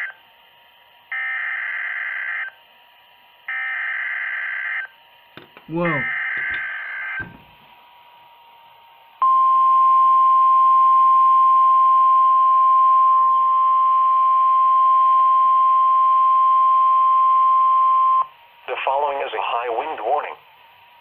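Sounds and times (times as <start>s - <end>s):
steady high-pitched alarm tone: 1.1s - 2.6s, 3.4s - 4.9s, 5.7s - 7.6s
faint radio static: 18.6s - 20.6s.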